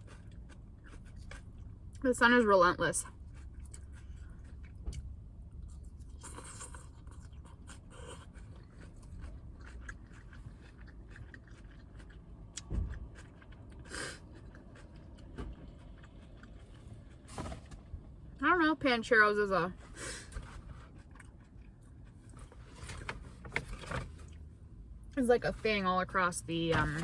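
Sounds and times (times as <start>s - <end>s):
person chewing salad: 0.0s - 2.0s, 3.1s - 17.3s, 20.8s - 22.6s
low steady hum: 0.0s - 27.0s.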